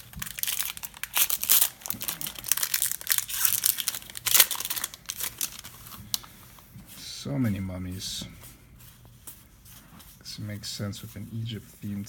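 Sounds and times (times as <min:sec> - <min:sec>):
foil wrapper crinkling: 0:00.0 - 0:06.3.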